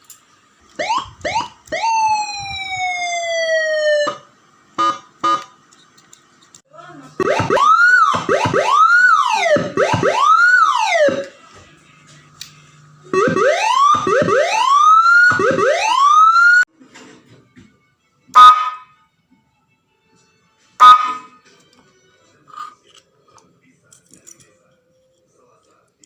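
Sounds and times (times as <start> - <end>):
rising siren sweeps: 0.8 - 4.3, 7.2 - 11.3, 13.1 - 16.7
electronic siren wail: 0.8 - 5.4, 7.2 - 11.3, 13.1 - 16.7, 18.4 - 18.8, 20.8 - 21.3
short loud siren blasts: 7.2 - 11.2, 13.2 - 16.6, 18.4 - 18.9, 20.8 - 21.3.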